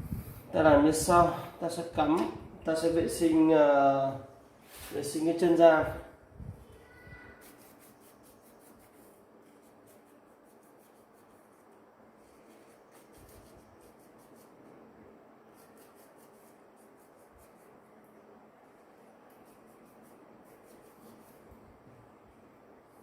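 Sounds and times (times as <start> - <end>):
faint rubbing strokes: 4.6 - 5.3, 6.5 - 14.8, 15.4 - 21.9.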